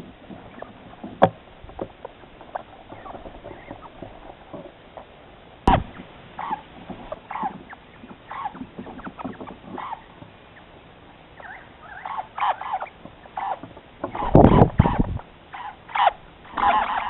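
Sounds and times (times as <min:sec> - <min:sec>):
birds chirping and squawking: 0:02.2 - 0:04.6, 0:05.7 - 0:17.0
sharp knock: 0:05.7 - 0:06.0.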